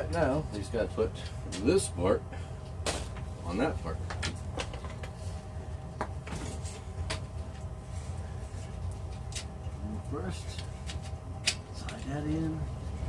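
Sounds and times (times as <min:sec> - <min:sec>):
furnace hum: 0:00.0 - 0:13.0.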